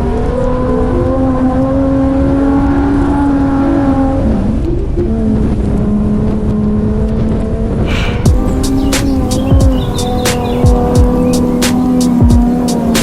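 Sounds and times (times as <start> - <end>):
engine running hard under load: 5.2 - 13.0.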